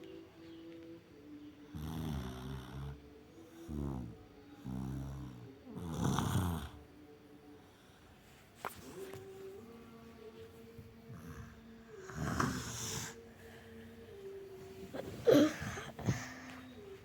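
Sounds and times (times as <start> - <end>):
quiet breaths: 0.0 - 17.0
person snoring: 3.6 - 6.8, 11.1 - 13.2.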